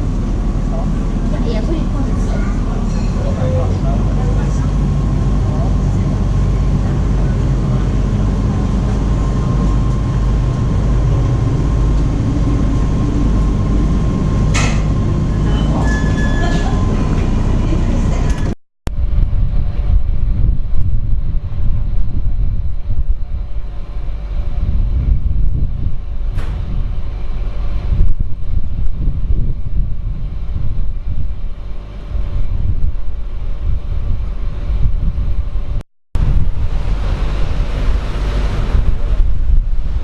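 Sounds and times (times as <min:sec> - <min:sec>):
faint hum: 0:00.0 - 0:40.0
ferry engine rumbling: 0:00.0 - 0:40.0
wind buffeting microphone: 0:00.0 - 0:40.0.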